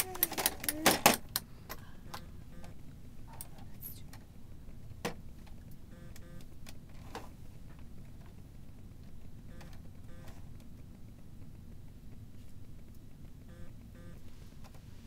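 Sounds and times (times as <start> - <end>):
low room hum: 0.0 - 15.0
electronic beeps: 2.1 - 2.8, 13.5 - 14.2.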